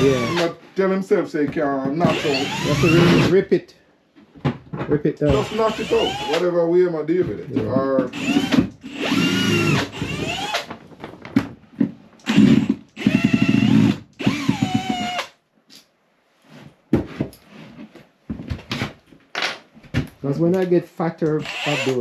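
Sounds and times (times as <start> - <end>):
power drill driving screws: 0.0 - 0.5, 2.0 - 3.3, 5.4 - 6.4, 8.1 - 10.7, 12.2 - 15.3, 21.3 - 22.0.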